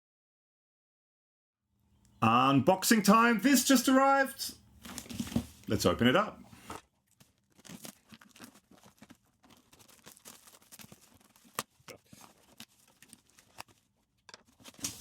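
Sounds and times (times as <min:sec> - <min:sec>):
packaging rustling and tearing: 0:06.6 - 0:15.0.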